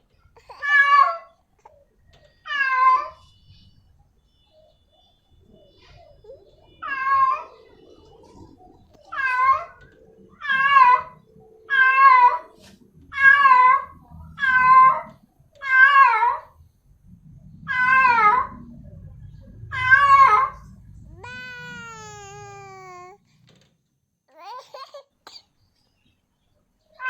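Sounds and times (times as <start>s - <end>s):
cat meowing: 21.1s - 23.2s.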